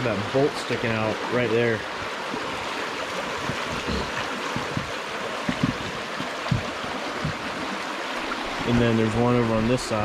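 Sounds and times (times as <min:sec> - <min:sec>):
river water rushing: 0:00.0 - 0:10.0
short low thumps: 0:03.4 - 0:07.6.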